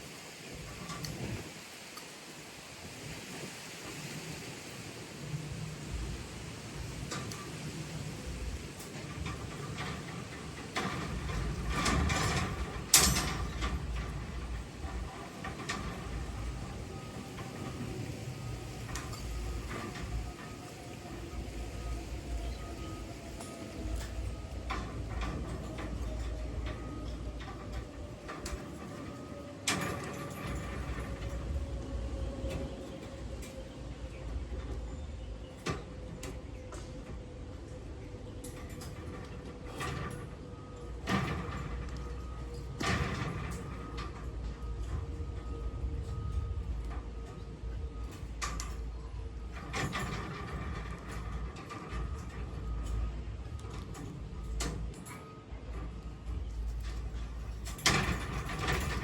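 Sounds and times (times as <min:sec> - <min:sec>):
scattered knocks and clicks: 0:49.5 - 0:59.0.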